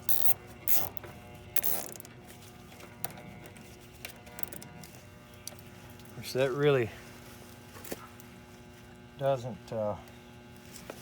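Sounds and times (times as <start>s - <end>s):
cable tie zipping tight: 0.0s - 1.0s, 1.6s - 2.1s.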